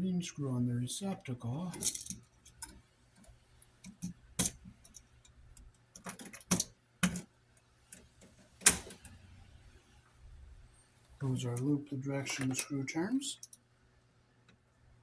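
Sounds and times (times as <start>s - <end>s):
wire bending clicks and taps: 1.7s - 9.1s.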